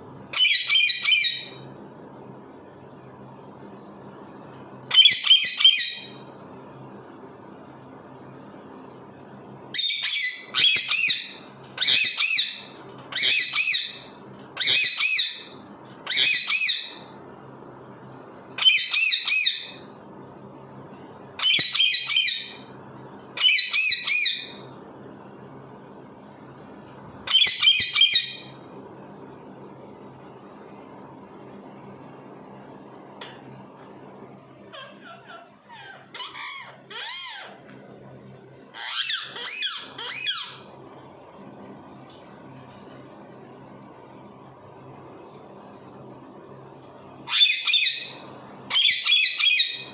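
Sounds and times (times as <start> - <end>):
parrot squawking: 0.3 - 1.6, 9.7 - 14.0, 14.6 - 17.0, 18.6 - 19.8, 27.3 - 28.5, 34.7 - 37.8, 38.7 - 40.7, 47.3 - 49.8.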